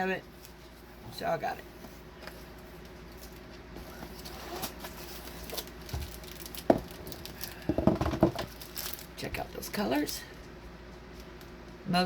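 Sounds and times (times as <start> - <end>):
handling taps and rustles: 4.8 - 8.6.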